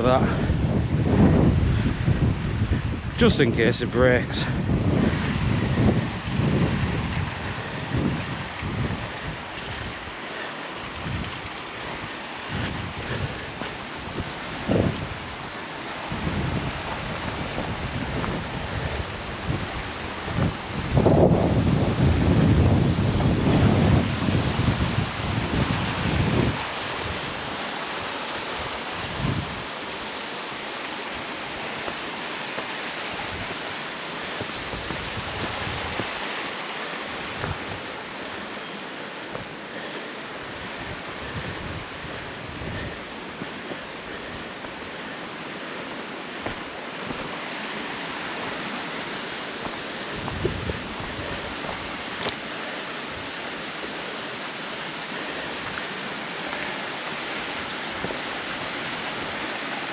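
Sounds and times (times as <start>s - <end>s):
river and waterfall rushing: 0.0s - 59.9s.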